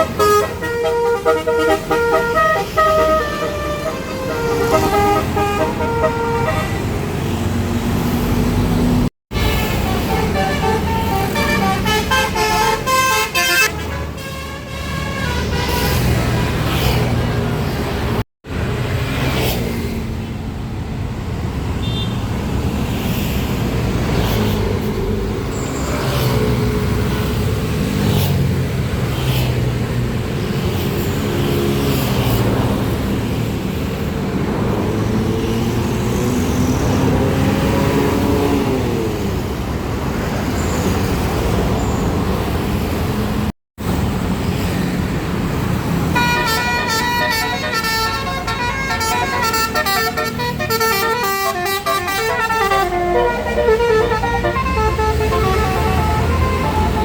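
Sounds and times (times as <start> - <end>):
multi-note bus horn melody: 0.0 - 7.0, 9.3 - 16.8, 46.0 - 57.0
bus engines running: 0.0 - 57.0.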